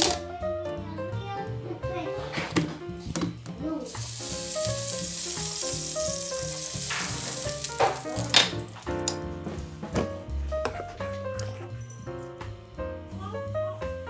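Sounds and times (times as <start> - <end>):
background music: 0.0 - 14.0
waffle batter sizzling: 3.8 - 8.9.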